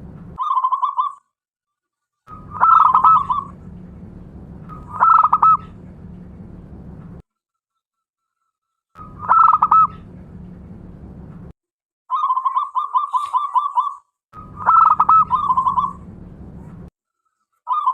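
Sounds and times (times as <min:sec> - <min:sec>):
low steady hum: 0:00.0 - 0:00.4, 0:02.3 - 0:07.2, 0:09.0 - 0:11.6, 0:14.4 - 0:16.9
dove trilled cooing: 0:02.3 - 0:03.6, 0:04.7 - 0:05.8, 0:09.0 - 0:10.0, 0:12.1 - 0:16.0.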